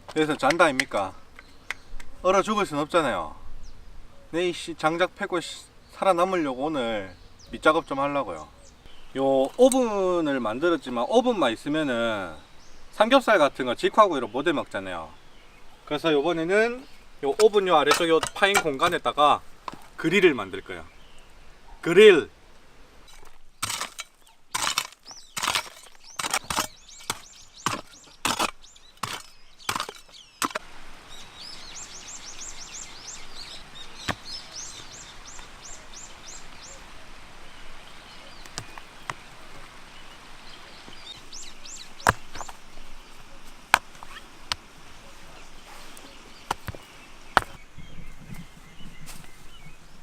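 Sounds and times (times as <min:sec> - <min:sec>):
sharp tool strikes: 0:23.1 - 0:30.6
small bird chirping: 0:23.5 - 0:44.3.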